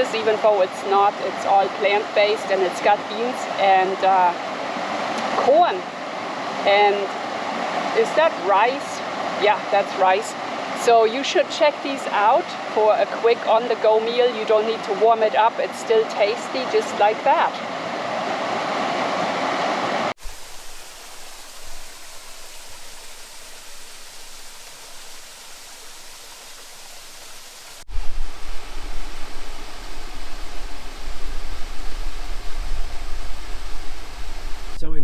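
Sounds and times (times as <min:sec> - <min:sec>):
stream rushing over cascades: 0:00.0 - 0:34.8
uneven low rumble: 0:27.9 - 0:35.0.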